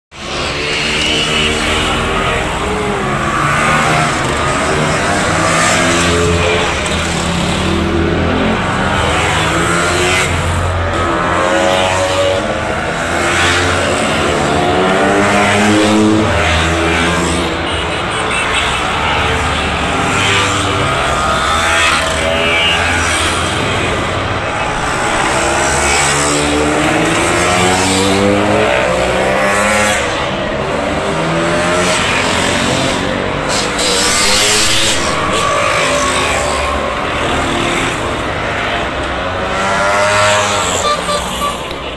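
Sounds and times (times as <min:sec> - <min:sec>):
scooter engines racing past: 0:00.2 - 0:41.9.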